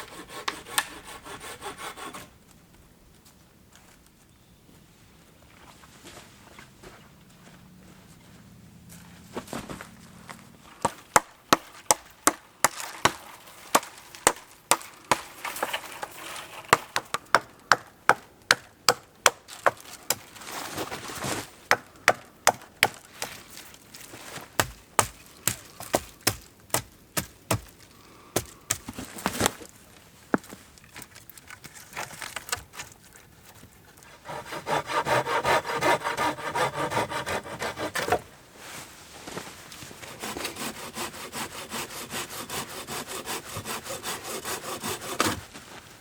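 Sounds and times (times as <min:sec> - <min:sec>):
wood being chopped: 0:10.8 - 0:15.6, 0:16.7 - 0:20.3, 0:21.7 - 0:23.4, 0:24.6 - 0:29.5.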